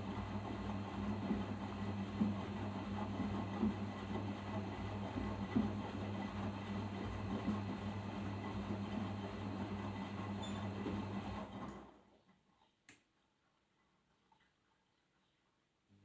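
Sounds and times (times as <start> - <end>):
washing machine hum: 0.0 - 12.1.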